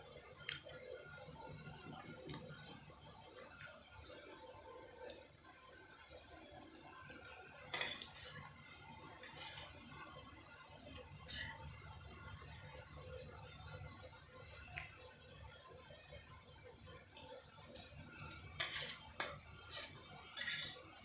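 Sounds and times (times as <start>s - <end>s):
cutlery scraping a plate: 7.7s - 8.5s, 9.2s - 9.8s, 11.3s - 11.6s, 18.6s - 20.9s.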